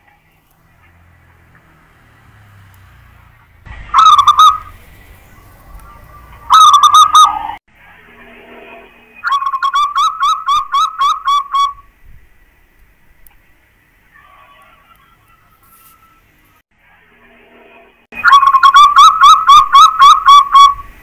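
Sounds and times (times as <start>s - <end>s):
dove cooing: 3.9s - 7.6s.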